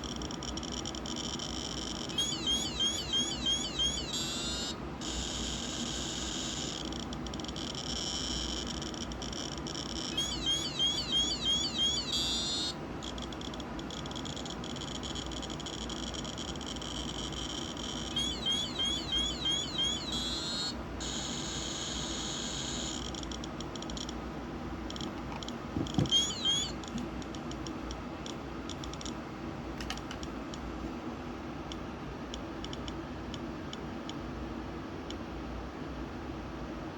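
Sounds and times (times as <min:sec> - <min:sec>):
rapid chirping tones: 0:00.0 - 0:24.0, 0:25.9 - 0:27.7
radiation detector clicking: 0:00.0 - 0:24.2, 0:24.9 - 0:29.2
steady low hum: 0:00.0 - 0:36.9.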